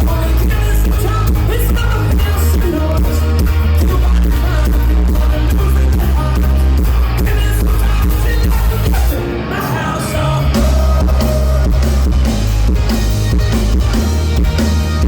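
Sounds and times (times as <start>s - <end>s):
live rock band playing: 0.0s - 15.0s.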